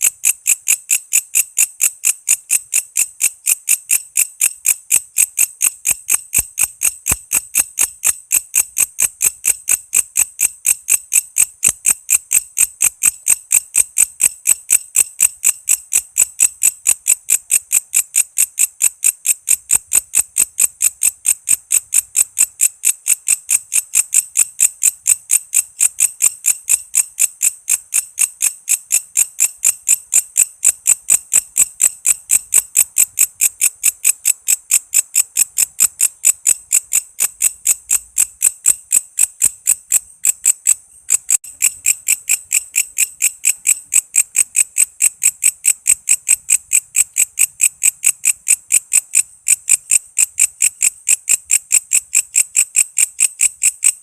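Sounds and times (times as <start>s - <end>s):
insect high-pitched chirps: 0.0s - 54.0s.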